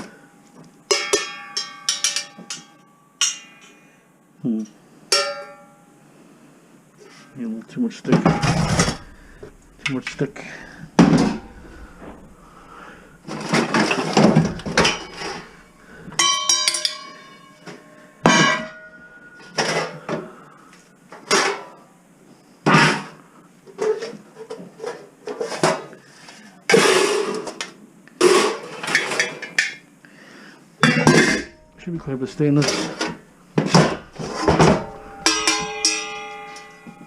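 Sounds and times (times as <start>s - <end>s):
metal pots and pans clattering: 0.9s - 3.8s, 5.1s - 5.7s, 8.1s - 20.2s, 28.2s - 29.8s, 30.8s - 37.0s
ringing metal clang: 0.9s - 3.8s, 5.1s - 5.9s, 8.1s - 20.0s, 30.8s - 37.0s.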